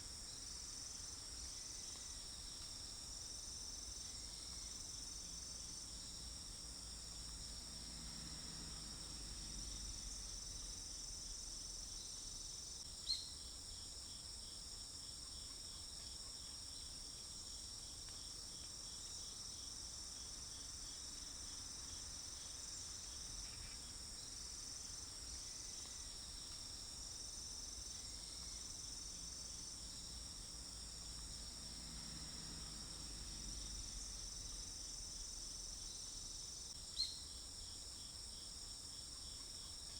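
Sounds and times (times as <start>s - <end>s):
insects chirring: 15.3s - 39.9s.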